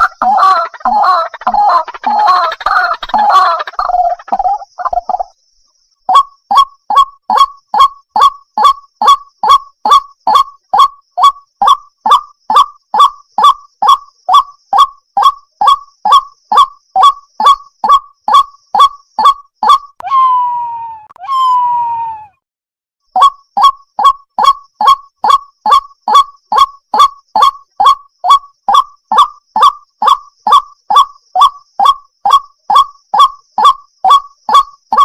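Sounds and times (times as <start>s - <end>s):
water hen calling: 0.0s - 5.3s, 16.1s - 22.3s.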